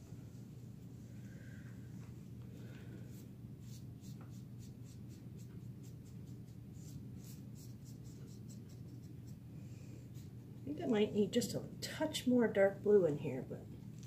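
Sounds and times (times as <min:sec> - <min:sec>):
low room hum: 0:00.0 - 0:14.0
paintbrush strokes on canvas: 0:02.6 - 0:09.4.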